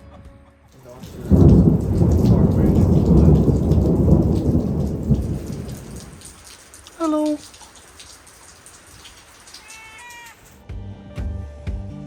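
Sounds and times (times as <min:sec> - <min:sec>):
rain falling: 0:00.7 - 0:10.6
thunder rumbling: 0:00.9 - 0:06.6.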